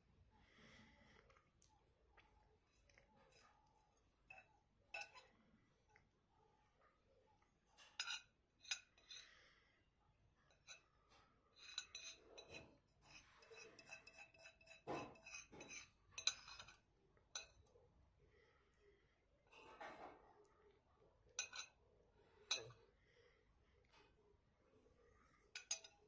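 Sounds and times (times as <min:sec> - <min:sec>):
cutlery clinking on crockery: 0:04.2 - 0:05.4, 0:07.8 - 0:09.4, 0:10.5 - 0:17.7, 0:21.4 - 0:21.8, 0:22.4 - 0:22.8, 0:25.4 - 0:26.0.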